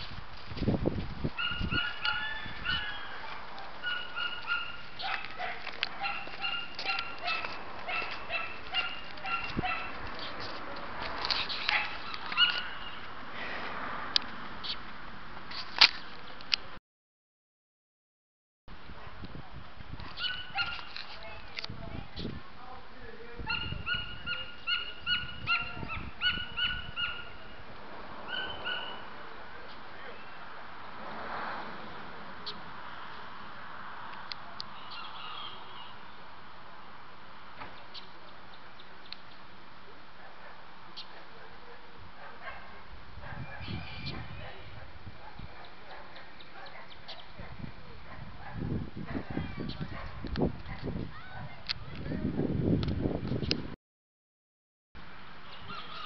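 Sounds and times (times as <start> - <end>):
dog whimpering and yipping: 1.4 - 10.0, 23.5 - 27.4, 28.3 - 29.0
animal short high calls: 55.7 - 56.0.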